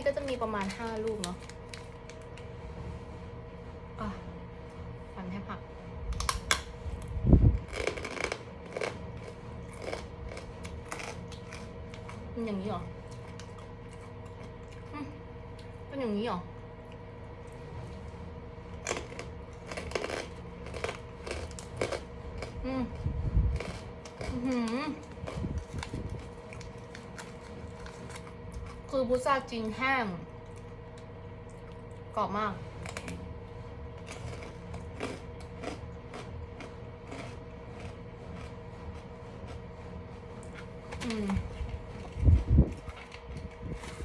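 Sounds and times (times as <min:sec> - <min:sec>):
crunchy fruit chewing: 0:00.0 - 0:05.2, 0:05.9 - 0:15.9, 0:16.5 - 0:44.0
background hum: 0:00.0 - 0:44.0.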